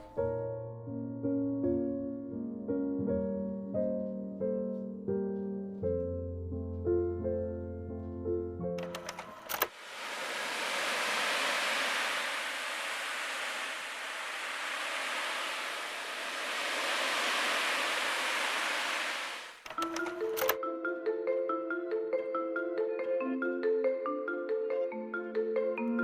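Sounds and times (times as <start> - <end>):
piano music: 0.0 - 9.6
steady rushing hiss: 8.8 - 19.8.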